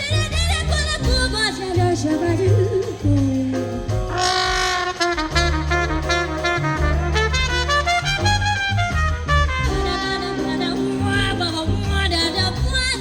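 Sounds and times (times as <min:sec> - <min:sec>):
jazz big band playing: 0:00.0 - 0:13.0
steady bass notes: 0:00.0 - 0:13.0.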